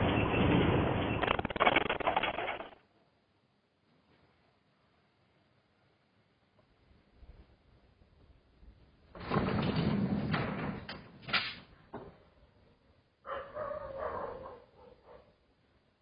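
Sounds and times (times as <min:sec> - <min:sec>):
rattling and clattering: 0:09.1 - 0:12.1
dog cry: 0:13.3 - 0:15.3.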